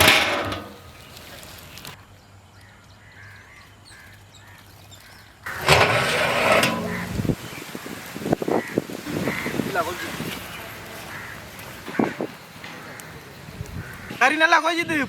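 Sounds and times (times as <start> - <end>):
faint bird calls: 8.5 - 14.2.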